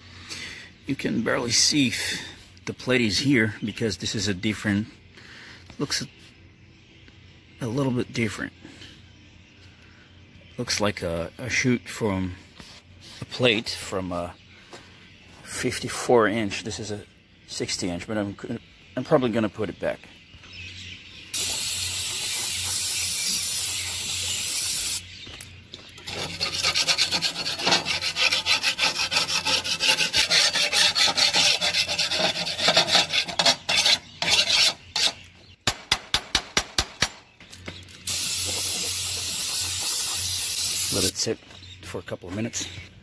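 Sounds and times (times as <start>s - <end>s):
aerosol spray can hissing: 21.4s - 25.0s, 38.1s - 41.1s
scrubbing at metal: 26.0s - 35.2s.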